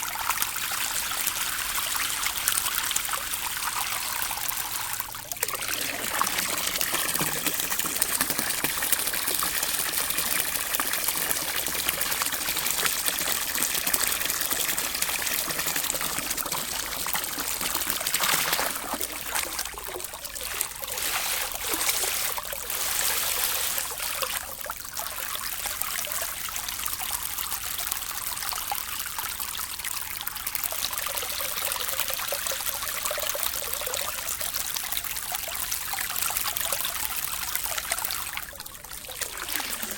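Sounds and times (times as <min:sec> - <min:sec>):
water trickling and rippling: 0:00.0 - 0:39.9.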